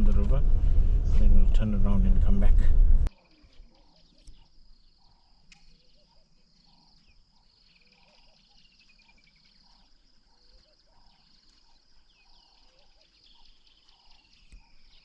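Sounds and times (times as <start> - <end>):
bird calls: 3.1 - 15.0
insect trill: 3.2 - 15.0.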